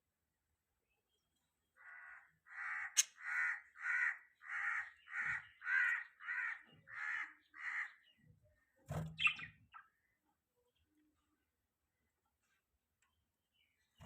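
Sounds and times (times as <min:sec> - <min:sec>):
budgerigar harsh raspy calls: 0:01.8 - 0:08.2.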